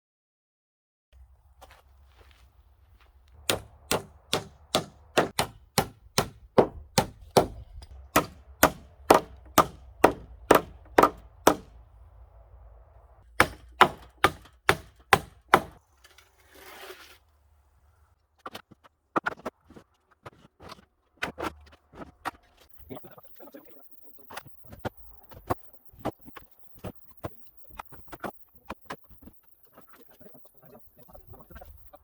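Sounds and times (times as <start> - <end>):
hammer striking timber: 3.4 - 11.8, 13.3 - 15.8
rustle: 15.8 - 18.0.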